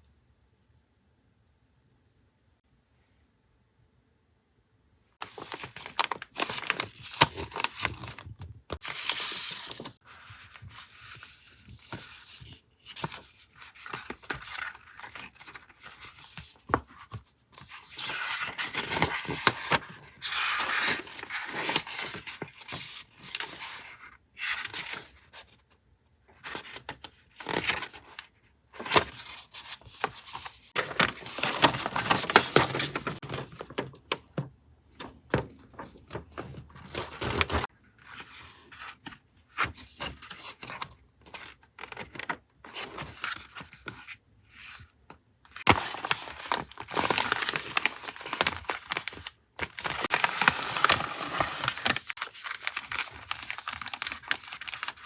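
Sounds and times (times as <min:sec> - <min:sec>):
wrapping paper rustling and tearing: 0:05.2 - 0:08.2, 0:28.9 - 0:33.5, 0:45.6 - 0:55.0.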